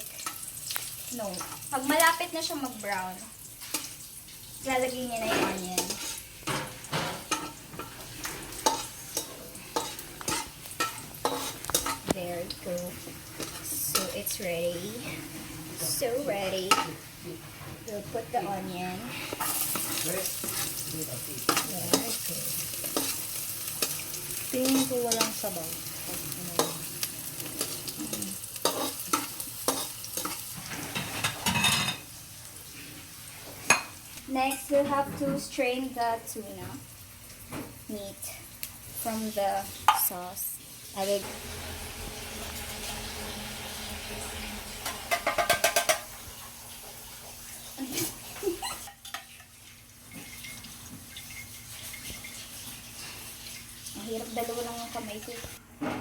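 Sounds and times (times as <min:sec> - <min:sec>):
onion sizzling in hot oil: 0:00.0 - 0:55.6
spatula scraping a pan: 0:05.2 - 0:16.0, 0:19.0 - 0:32.0, 0:41.0 - 0:48.2.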